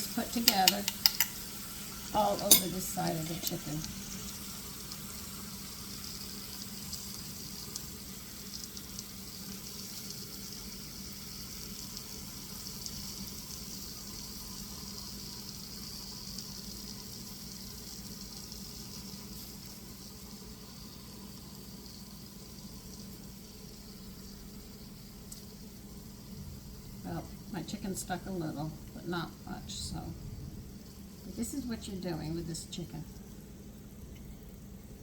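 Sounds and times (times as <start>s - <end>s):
chicken sizzling in a pan: 0.0s - 35.0s
low hum: 26.0s - 33.2s.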